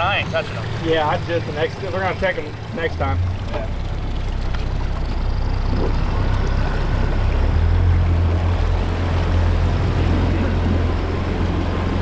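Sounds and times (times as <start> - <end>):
boat motor humming: 0.0 - 12.0.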